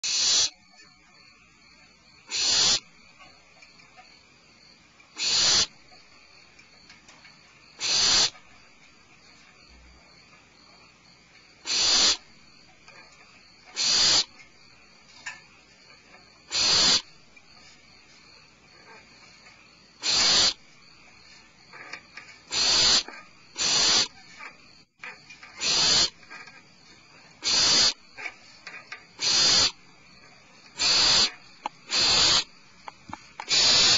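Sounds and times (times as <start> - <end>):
owls hissing calls: 0.0 - 0.6, 2.3 - 2.9, 5.2 - 5.8, 7.8 - 8.4, 11.6 - 12.2, 13.7 - 14.4, 16.5 - 17.1, 20.0 - 20.6, 22.5 - 24.2, 25.6 - 26.2, 27.4 - 28.0, 29.2 - 29.8, 30.8 - 33.9.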